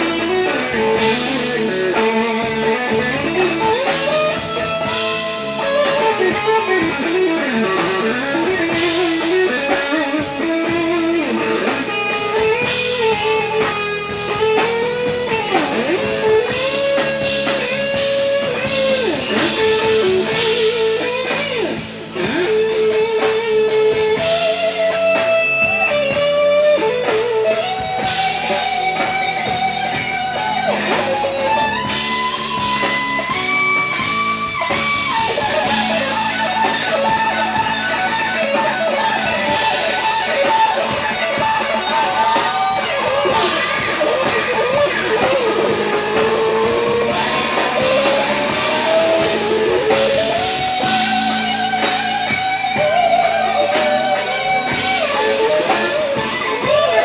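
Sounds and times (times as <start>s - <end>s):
drum kit: 0.0s - 57.0s
electric guitar lead: 0.0s - 57.0s
strummed guitar: 0.0s - 57.0s.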